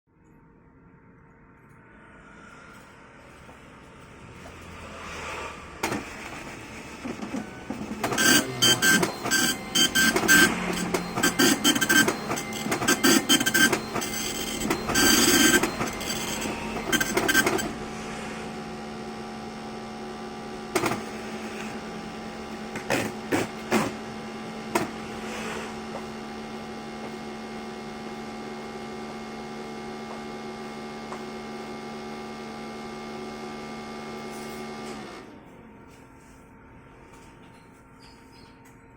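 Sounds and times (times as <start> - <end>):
printer hum: 2.6 - 37.9
printer rattling clatter: 5.8 - 17.8, 20.7 - 21.2.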